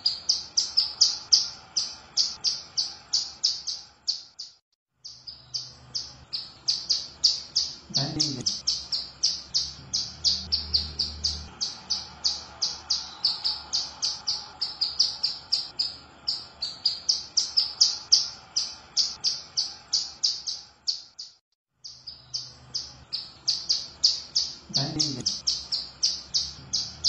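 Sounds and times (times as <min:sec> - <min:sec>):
bird chirping rapidly: 0:00.0 - 0:27.0.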